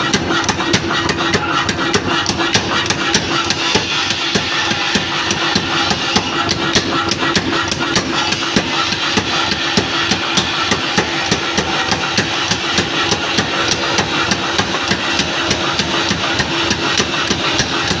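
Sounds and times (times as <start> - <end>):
forging hammer striking metal: 3.3 - 18.0
steady machine hum: 8.0 - 18.0.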